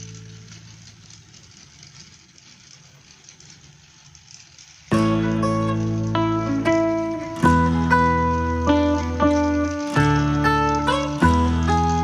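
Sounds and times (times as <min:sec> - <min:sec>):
keyboard notes: 0:04.9 - 0:12.0
plucked acoustic guitar: 0:04.9 - 0:12.0.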